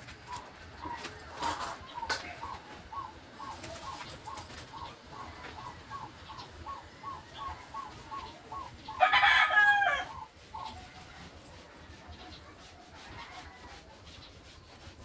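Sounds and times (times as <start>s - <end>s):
rooster crowing: 9.0s - 10.3s.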